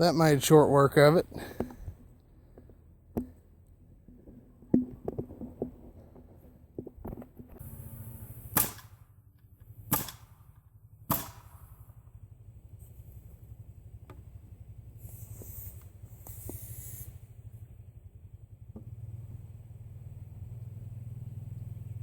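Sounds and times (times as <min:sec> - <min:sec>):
steady hum with hiss: 0:07.4 - 0:22.0.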